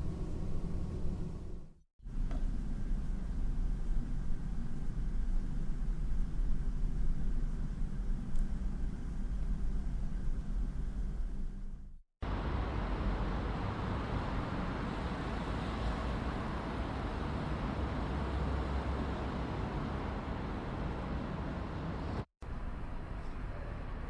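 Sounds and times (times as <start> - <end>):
distant traffic noise: 12.3 - 24.0.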